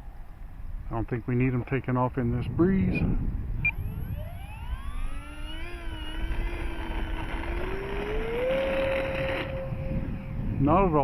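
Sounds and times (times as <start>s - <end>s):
low wind rumble on microphone: 0.0s - 11.0s
electric motor and propeller whine: 3.4s - 11.0s.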